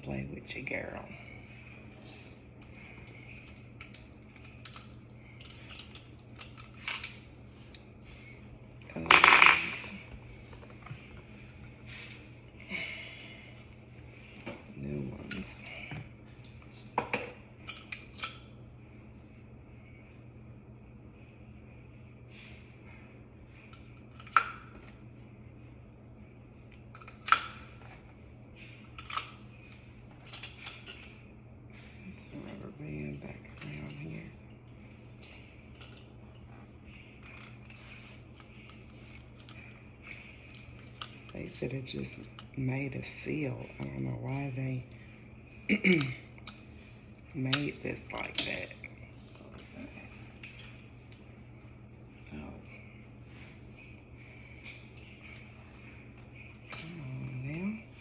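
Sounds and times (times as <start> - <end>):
faint steady hum: 0.0 - 58.0.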